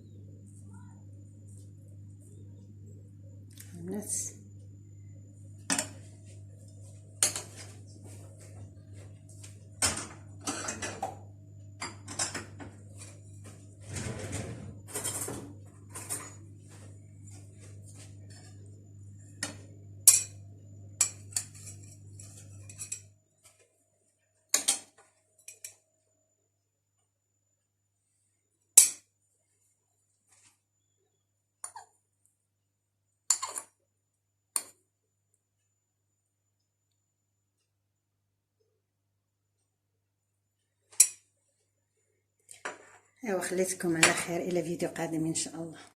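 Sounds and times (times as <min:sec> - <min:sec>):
steady low hum: 0:00.0 - 0:24.3
utensils scraping a plate: 0:21.1 - 0:23.1.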